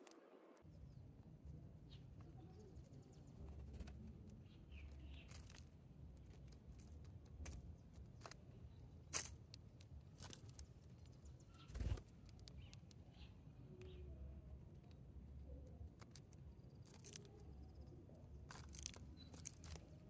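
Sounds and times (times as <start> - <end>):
faint bird chirps: 1.8 - 5.6, 11.0 - 14.5.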